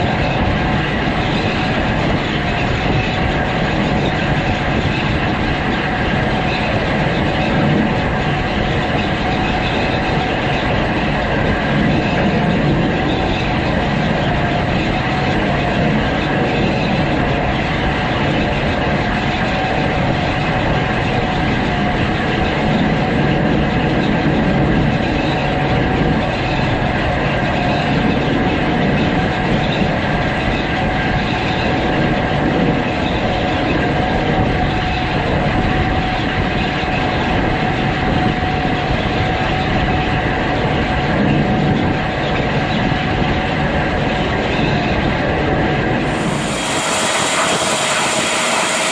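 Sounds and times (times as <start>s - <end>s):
combine harvester whine: 0.0s - 48.9s
combine harvester droning: 45.7s - 48.9s.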